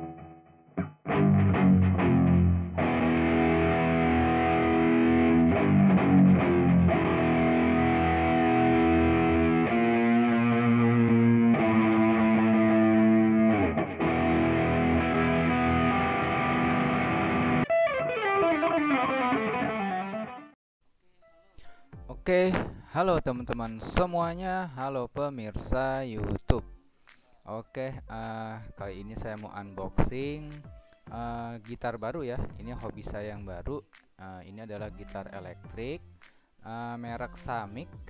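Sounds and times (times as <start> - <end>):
distorted electric guitar chords: 0.0 - 20.6.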